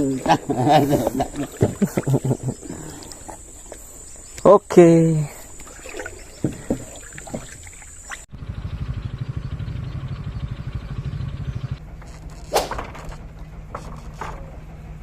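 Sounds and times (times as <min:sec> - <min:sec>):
engine running: 0:08.2 - 0:15.0
sharp knock: 0:12.5 - 0:13.2.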